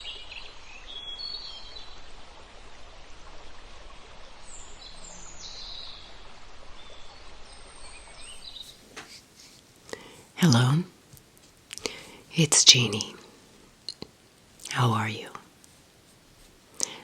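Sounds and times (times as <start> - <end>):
birds chirping: 7.8 - 10.9.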